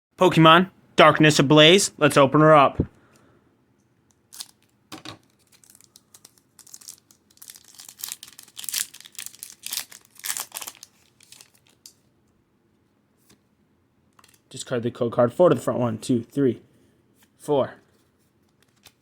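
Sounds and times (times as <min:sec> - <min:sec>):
foil wrapper crinkling and ripping: 0:04.3 - 0:12.0, 0:18.6 - 0:19.0.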